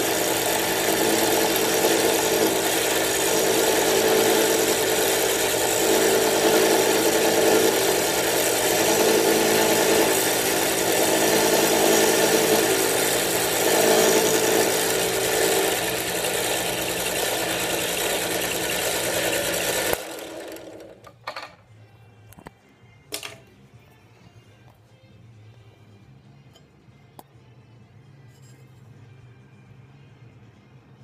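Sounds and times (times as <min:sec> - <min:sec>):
milling machine running: 0:00.0 - 0:21.0.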